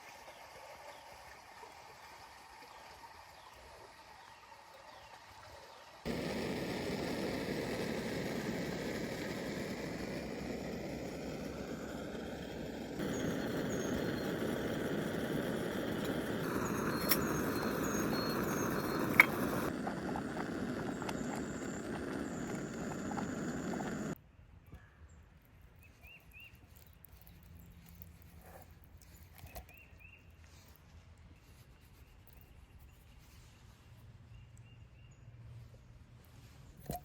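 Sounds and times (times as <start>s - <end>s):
creek water rushing: 6.1s - 24.2s
faint high chirps: 12.8s - 24.8s.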